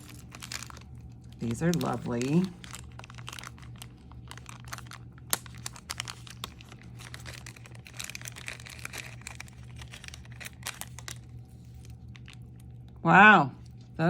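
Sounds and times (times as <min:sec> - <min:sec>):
jewelry clicking and crinkling: 0:00.0 - 0:13.0
low hum: 0:00.0 - 0:14.0.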